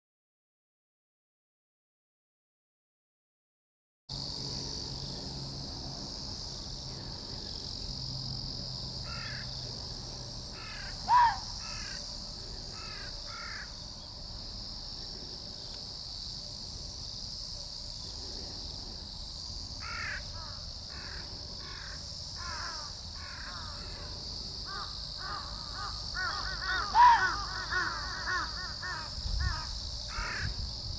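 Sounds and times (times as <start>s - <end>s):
fox barking: 11.1s - 11.5s, 26.3s - 28.5s
fox yelps falling in pitch: 11.1s - 11.5s, 26.8s - 27.8s.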